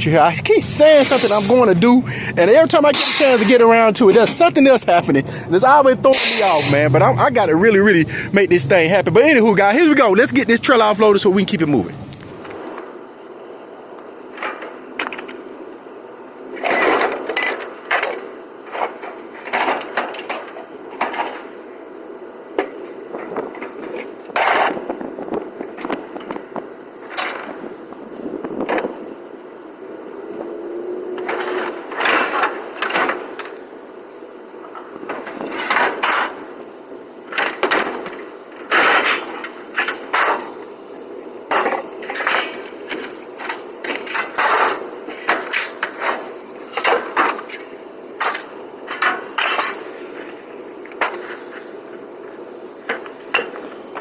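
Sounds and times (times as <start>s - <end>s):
scrap metal clattering onto pile: 2.9s - 3.6s, 37.3s - 40.5s, 41.5s - 47.6s, 48.2s - 49.9s.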